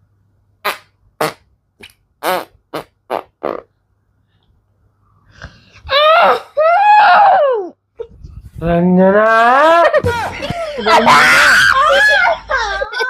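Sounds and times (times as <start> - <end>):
fart sounds: 0.6 - 3.8.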